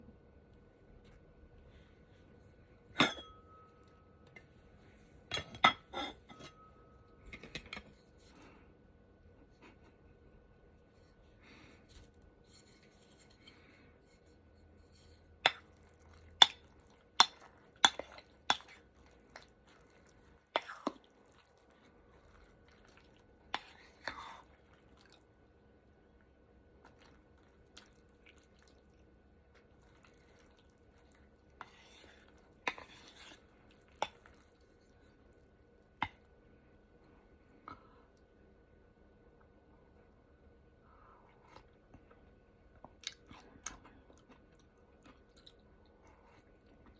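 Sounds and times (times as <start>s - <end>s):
quiet chewing: 15.0s - 25.5s, 26.2s - 38.3s, 41.0s - 46.9s.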